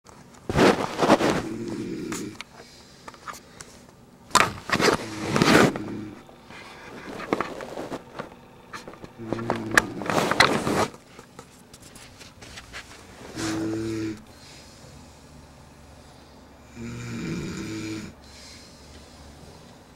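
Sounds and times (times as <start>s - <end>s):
man snoring loudly: 1.3s - 2.4s, 5.0s - 6.2s, 9.2s - 10.2s, 13.3s - 14.3s, 16.6s - 18.6s.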